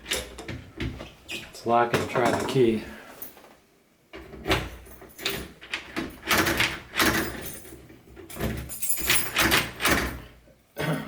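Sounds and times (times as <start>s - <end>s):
key turning in door lock: 4.4s - 10.3s.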